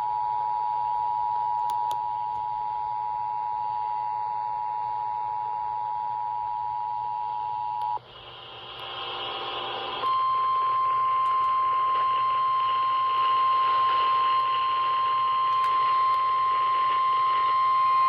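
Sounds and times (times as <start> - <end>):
radio hiss: 8.0 - 18.0
steady high warning tone: 8.7 - 18.0.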